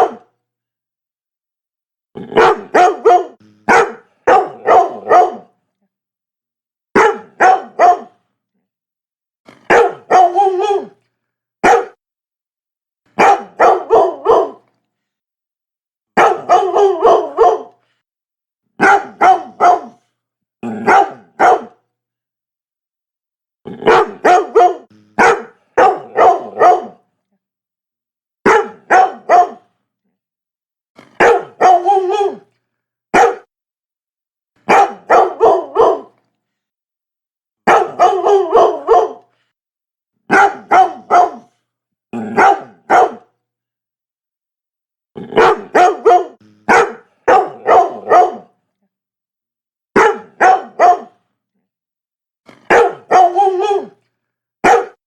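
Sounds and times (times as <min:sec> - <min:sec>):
dog barking: 0:00.0 - 0:00.3, 0:02.3 - 0:05.6, 0:07.0 - 0:08.2, 0:09.6 - 0:11.0, 0:11.6 - 0:12.0, 0:13.2 - 0:14.7, 0:16.2 - 0:17.8, 0:18.8 - 0:20.1, 0:20.8 - 0:21.8, 0:23.8 - 0:27.0, 0:28.4 - 0:29.7, 0:31.1 - 0:32.5, 0:33.2 - 0:33.5, 0:34.6 - 0:36.2, 0:37.6 - 0:39.3, 0:40.3 - 0:41.6, 0:42.2 - 0:43.3, 0:45.3 - 0:48.6, 0:50.0 - 0:51.2, 0:52.5 - 0:54.0, 0:54.6 - 0:55.0.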